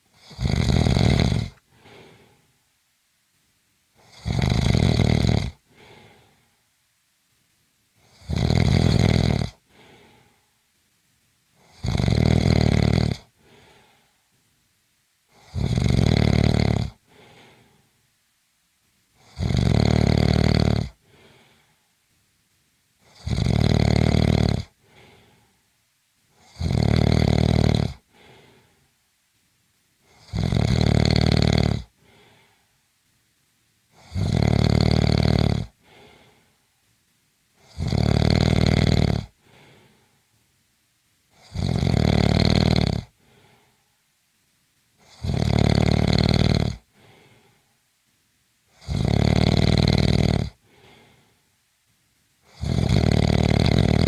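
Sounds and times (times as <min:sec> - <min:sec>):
person snoring: 0:00.1 - 0:02.4, 0:04.0 - 0:06.4, 0:08.0 - 0:10.4, 0:11.6 - 0:14.1, 0:15.3 - 0:17.8, 0:19.2 - 0:21.7, 0:23.0 - 0:25.6, 0:26.4 - 0:28.8, 0:30.1 - 0:32.6, 0:34.0 - 0:36.5, 0:37.6 - 0:40.1, 0:41.4 - 0:43.8, 0:45.0 - 0:47.6, 0:48.7 - 0:51.3, 0:52.4 - 0:54.0
faint short breath: 0:01.7 - 0:02.6, 0:05.7 - 0:06.7, 0:09.7 - 0:10.6, 0:13.4 - 0:14.3, 0:17.1 - 0:18.0, 0:21.0 - 0:22.0, 0:24.8 - 0:25.7, 0:28.1 - 0:29.0, 0:32.0 - 0:32.8, 0:35.8 - 0:36.7, 0:39.4 - 0:40.3, 0:43.2 - 0:44.0, 0:46.9 - 0:47.8, 0:50.6 - 0:51.5.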